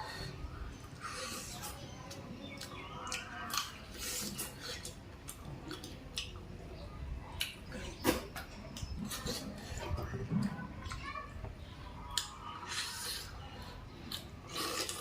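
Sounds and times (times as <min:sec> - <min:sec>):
person chewing and smacking: 0:01.4 - 0:06.4.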